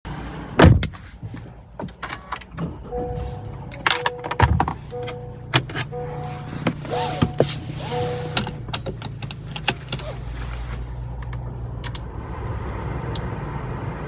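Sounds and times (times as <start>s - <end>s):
car door shutting: 1.8s - 9.1s
two-tone electronic chime: 2.9s - 8.4s.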